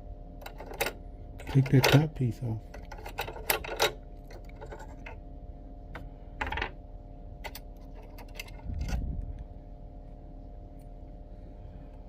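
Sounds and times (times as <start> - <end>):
rattle: 2.7 - 5.2, 7.4 - 9.2.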